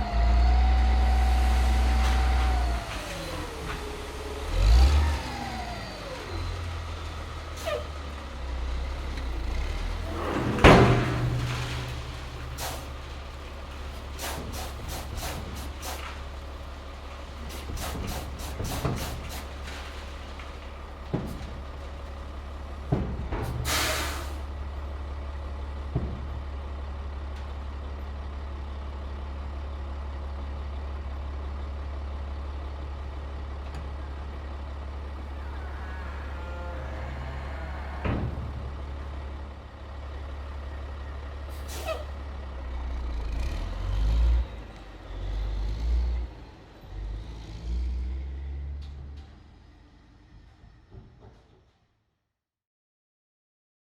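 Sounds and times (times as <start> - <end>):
diesel truck idling: 0.0 - 51.2
air-brake hiss: 12.0 - 13.0, 13.9 - 16.3, 17.4 - 19.6, 23.6 - 24.5, 41.5 - 42.1.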